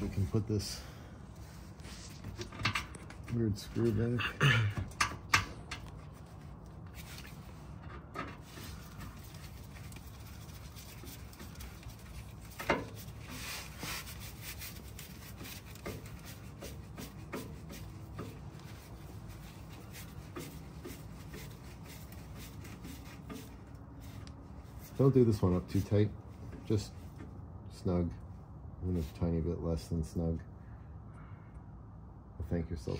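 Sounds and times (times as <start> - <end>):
faint rubbing: 8.4 - 27.2.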